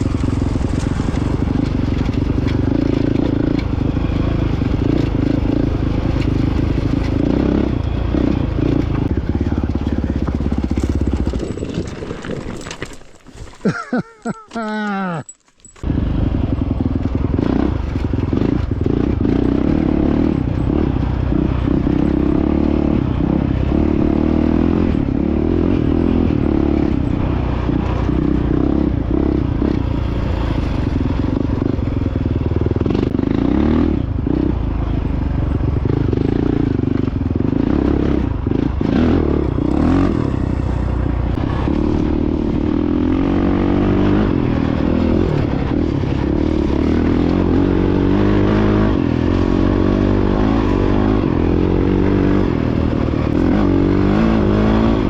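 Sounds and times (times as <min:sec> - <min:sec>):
motorcycle engine revving: 0:00.0 - 0:13.0, 0:15.7 - 0:55.0
bike clattering over rough ground: 0:08.8 - 0:15.9.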